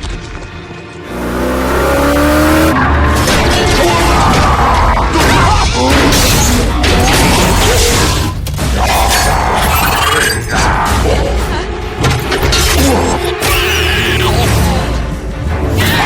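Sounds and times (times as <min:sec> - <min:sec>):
music: 0:00.0 - 0:16.0
car engines revving: 0:01.0 - 0:04.9
tyres skidding: 0:01.0 - 0:05.0.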